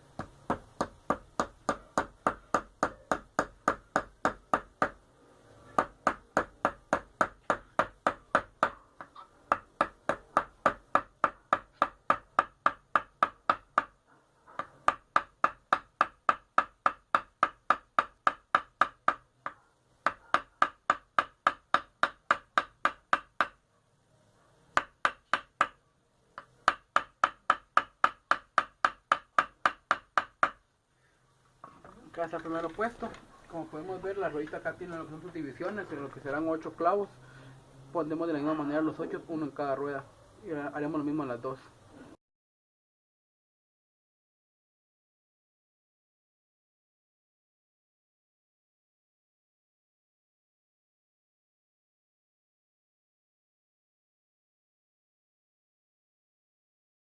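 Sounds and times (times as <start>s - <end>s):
hammer driving nails into wood: 20.0s - 23.6s, 26.4s - 30.6s.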